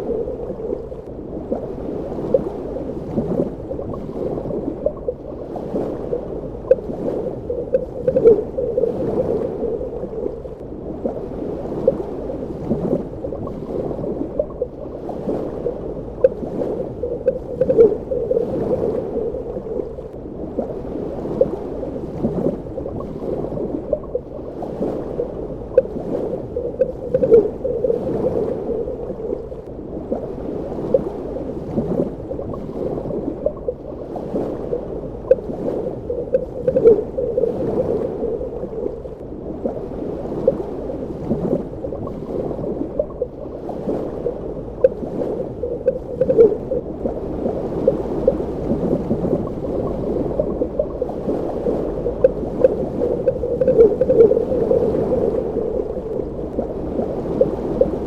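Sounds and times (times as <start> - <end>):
muffled underwater water wash: 0.0 - 58.0
bubbling pops and gurgles: 6.6 - 10.4, 16.1 - 19.6, 25.7 - 29.4, 36.2 - 39.1, 44.7 - 46.8, 47.9 - 58.0.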